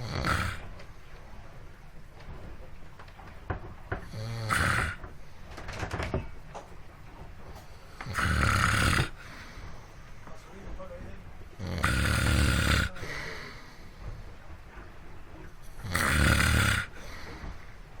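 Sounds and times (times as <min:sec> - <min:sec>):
rasping snores: 0:00.0 - 0:00.8, 0:04.0 - 0:05.1, 0:08.0 - 0:09.4, 0:11.6 - 0:13.7, 0:15.6 - 0:17.6.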